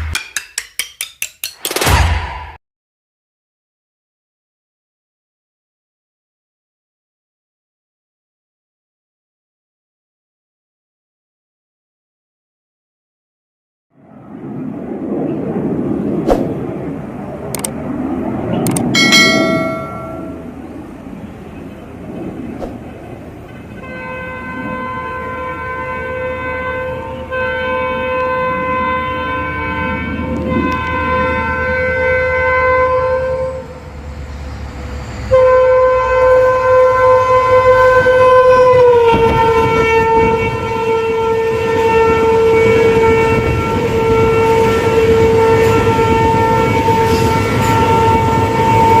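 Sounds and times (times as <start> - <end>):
train wheels rumbling on rails: 14.5 - 27.3, 36.1 - 49.0
sharp metallic clicks: 17.5 - 17.8, 18.6 - 18.9
locomotive horn blasts: 19.0 - 20.6, 23.4 - 34.0, 35.2 - 49.0
ringing metallic clang: 19.0 - 20.7.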